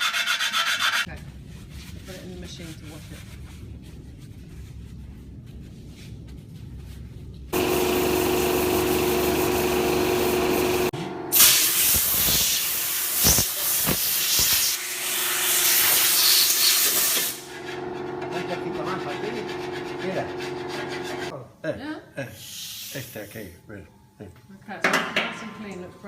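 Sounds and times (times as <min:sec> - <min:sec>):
pump humming: 0:07.6 - 0:11.4
hissing spray of fluid: 0:11.3 - 0:17.5, 0:22.4 - 0:23.1.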